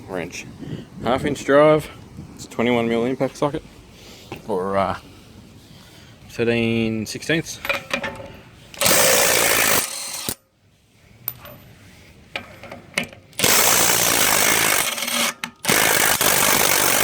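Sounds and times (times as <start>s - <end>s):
impact wrench hammering: 8.8s - 10.4s, 13.4s - 17.0s.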